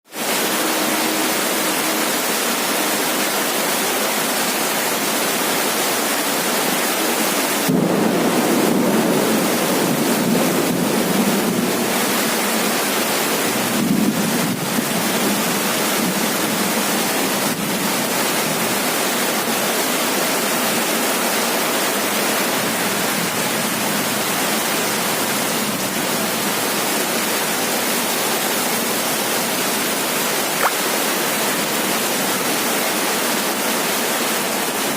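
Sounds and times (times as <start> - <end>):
heavy rain on a roof: 0.0 - 34.9
low rumble of thunder: 7.7 - 15.4.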